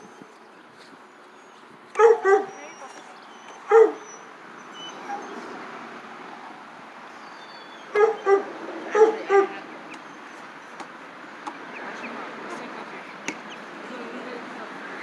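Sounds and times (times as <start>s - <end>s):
small dog yipping: 2.0s - 5.4s, 7.3s - 10.8s.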